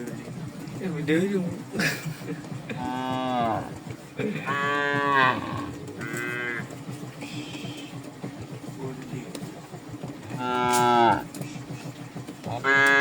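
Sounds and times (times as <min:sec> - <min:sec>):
cows mooing: 0:02.7 - 0:06.8, 0:10.4 - 0:11.3, 0:12.6 - 0:13.0.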